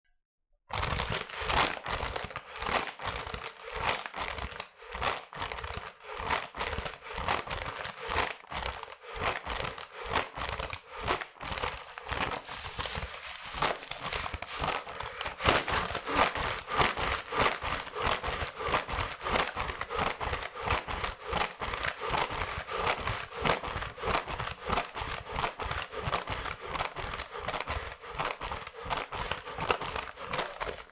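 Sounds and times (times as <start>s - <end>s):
person panting rapidly: 0.7s - 30.9s
paper bag crinkling: 11.4s - 17.4s, 30.3s - 30.9s.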